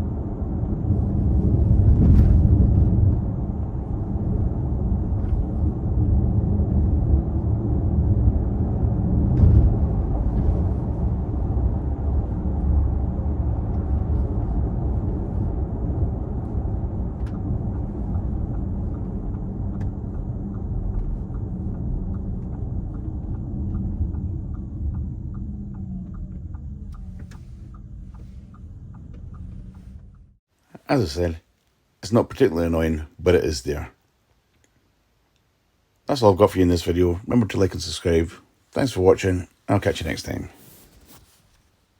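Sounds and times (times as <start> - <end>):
droning buzz: 0.0 - 30.4
falling whine: 0.0 - 30.4
road rumble inside car: 0.0 - 30.4
steady ticking: 11.2 - 30.4.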